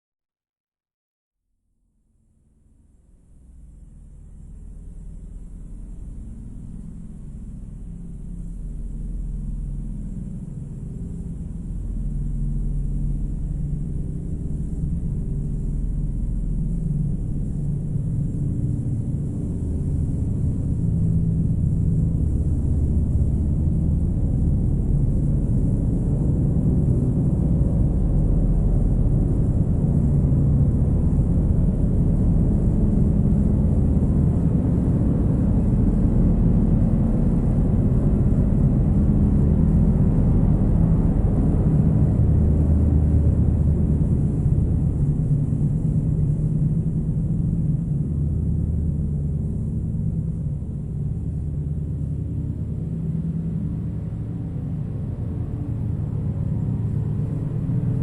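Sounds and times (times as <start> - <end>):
dark ambient drone music: 2.9 - 58.0.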